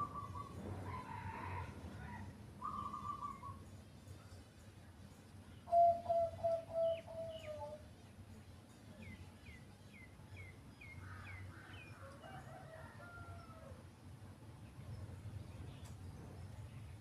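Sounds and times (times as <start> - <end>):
dove cooing: 0.0 - 0.6, 2.6 - 3.6, 5.7 - 7.8
soft bird calls: 0.0 - 0.6, 2.6 - 4.4, 5.4 - 8.0
birds chirping: 5.4 - 12.0.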